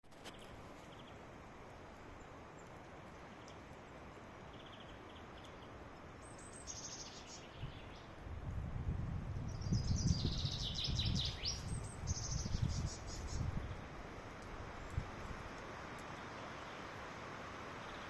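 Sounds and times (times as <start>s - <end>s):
bird chirps and trills: 4.5s - 8.2s, 9.4s - 13.9s
low wind rumble on microphone: 7.5s - 15.7s.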